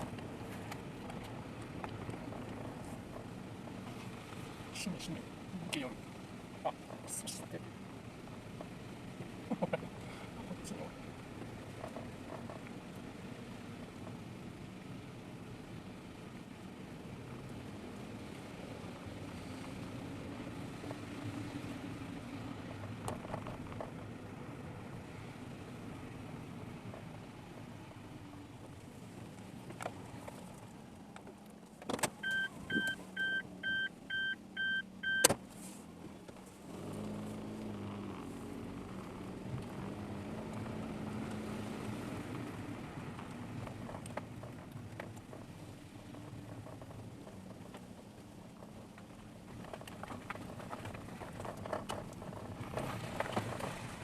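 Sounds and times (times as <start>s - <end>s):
car engine and tyre noise: 0.0s - 54.0s
electronic beeps: 32.2s - 35.3s.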